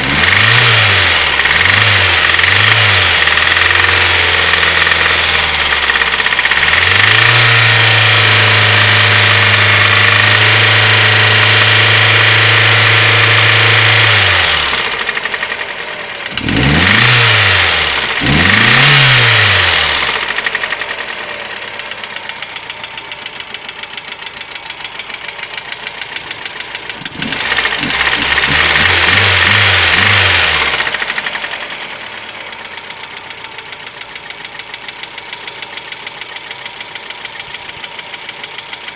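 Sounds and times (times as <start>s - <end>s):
car engine revving: 0.0s - 38.6s
rhythmic engine knock: 0.3s - 7.6s, 17.9s - 38.9s.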